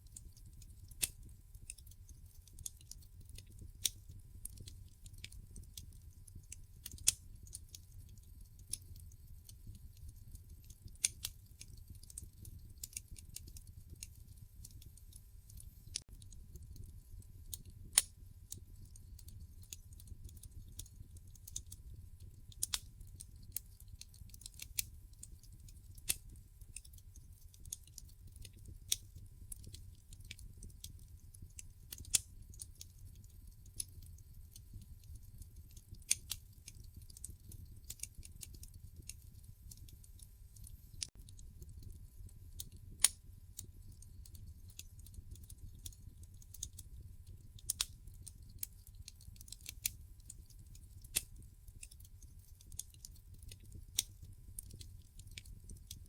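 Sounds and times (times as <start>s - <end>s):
wood fire crackling: 0.0s - 56.0s.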